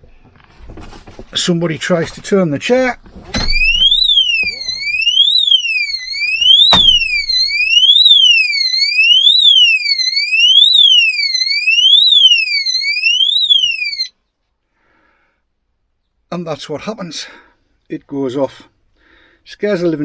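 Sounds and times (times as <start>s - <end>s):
alarm siren sweeping in pitch: 3.4s - 14.1s.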